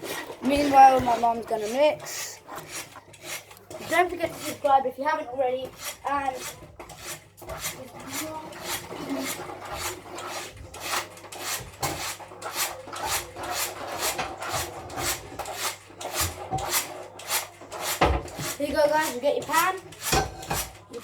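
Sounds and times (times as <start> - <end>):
utensil scraping bowl: 0.0 - 21.0.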